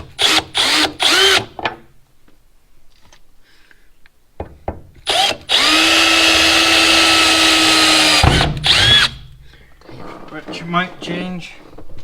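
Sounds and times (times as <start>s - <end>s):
power drill whining: 0.0s - 1.6s, 5.0s - 9.3s.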